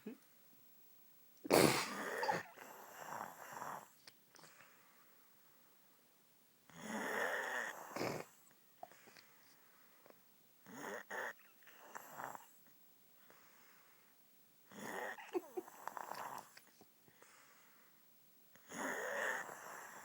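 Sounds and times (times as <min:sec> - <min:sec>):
woman snoring: 0:01.5 - 0:03.9, 0:06.7 - 0:08.3, 0:14.7 - 0:16.5, 0:18.6 - 0:20.0.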